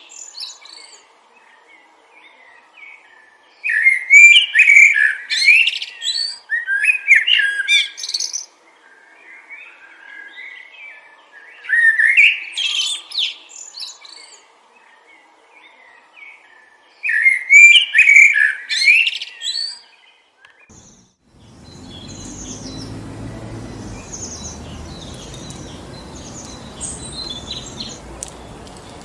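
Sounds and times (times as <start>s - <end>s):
light bird chirps: 20.7s - 29.0s
songbird chirping and warbling: 20.7s - 29.0s
wind through trees: 20.7s - 29.0s.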